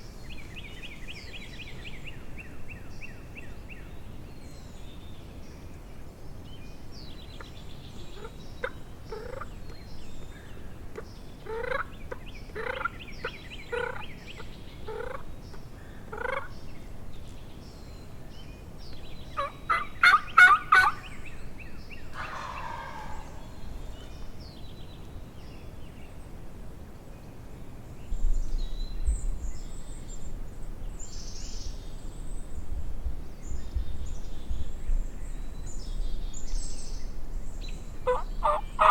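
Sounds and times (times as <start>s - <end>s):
turkey gobbling: 8.2s - 9.5s, 11.5s - 12.9s, 13.7s - 14.0s, 14.9s - 15.2s, 16.1s - 16.5s, 19.4s - 21.1s, 22.1s - 23.9s, 38.1s - 38.9s
turkey yelps: 11.5s - 11.9s, 16.1s - 16.5s, 19.4s - 21.0s, 22.1s - 23.8s, 38.1s - 38.9s
low rumble: 22.2s - 24.5s.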